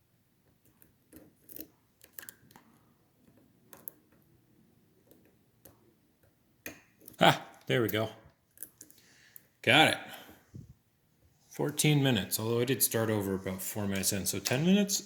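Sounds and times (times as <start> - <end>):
lock picks clicking and scraping: 0.4 - 4.4, 8.4 - 9.5.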